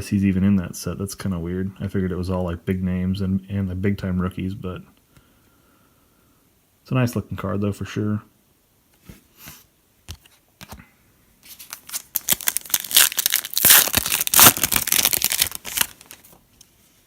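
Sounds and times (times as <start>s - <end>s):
foil wrapper tearing and crinkling: 11.4s - 16.4s.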